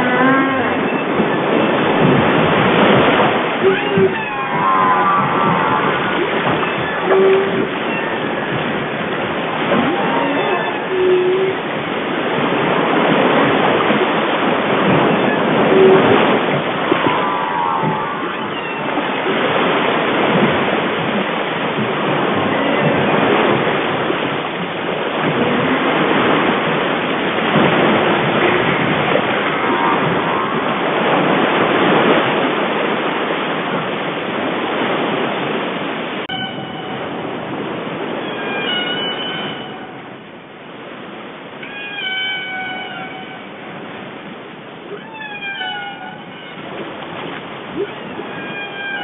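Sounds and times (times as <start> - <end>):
ocean waves and surf: 0.0 - 49.0.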